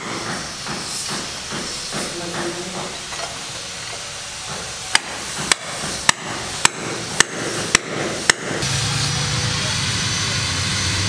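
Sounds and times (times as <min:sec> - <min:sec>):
steady hiss of site noise: 0:00.0 - 0:11.0
hammer blows: 0:04.5 - 0:11.0.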